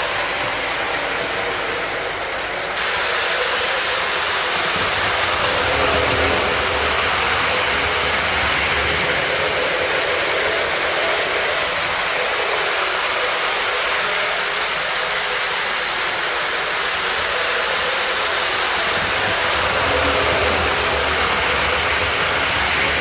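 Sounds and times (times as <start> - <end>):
recorded diesel engine rumble: 18.2 - 23.0.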